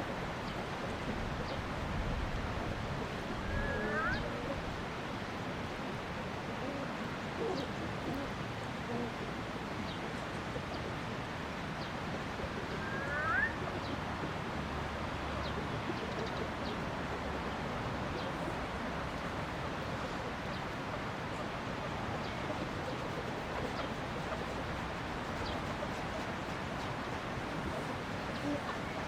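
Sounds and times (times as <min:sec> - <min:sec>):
outdoor background noise: 0:00.0 - 0:29.0
faint bird calls: 0:03.4 - 0:04.6, 0:12.4 - 0:14.0, 0:22.2 - 0:29.0.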